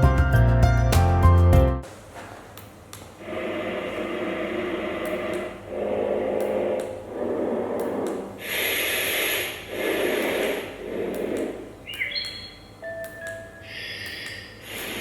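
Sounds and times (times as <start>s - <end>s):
sound machine hissing noise: 3.2s - 12.4s, 13.6s - 15.0s.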